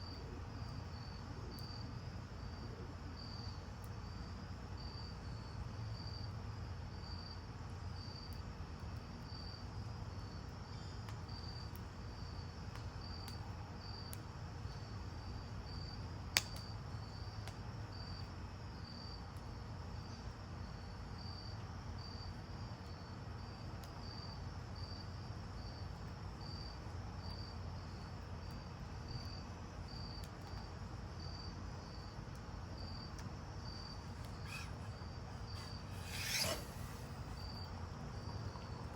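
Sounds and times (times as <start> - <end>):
cricket chirping: 0.0 - 7.4, 9.2 - 19.2, 21.2 - 38.9
sharp click: 34.2 - 37.5.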